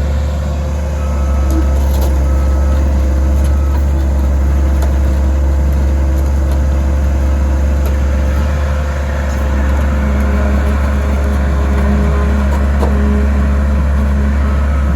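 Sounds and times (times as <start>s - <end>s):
excavator diesel engine droning: 0.0s - 14.9s
steady whine: 7.7s - 14.9s.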